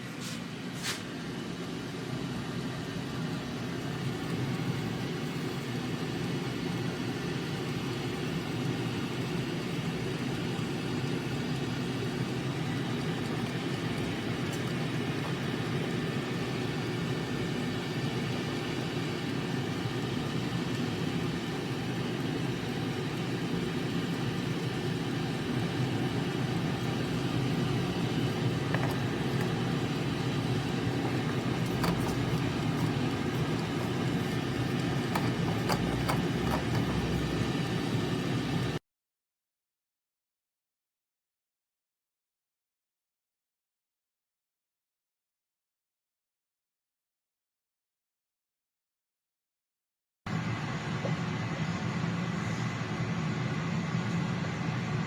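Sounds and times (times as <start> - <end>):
air fryer fan whirring: 0.0 - 38.8, 50.3 - 55.0.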